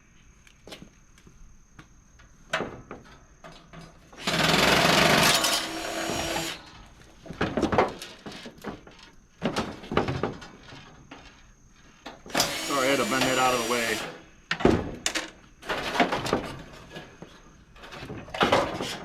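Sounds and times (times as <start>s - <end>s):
loud harsh metal grating: 12.3s - 14.2s.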